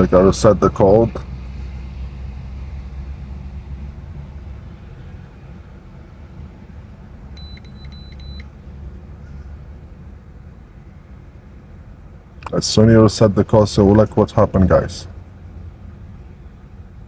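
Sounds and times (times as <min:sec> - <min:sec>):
high electronic beeps: 0:07.4 - 0:08.4.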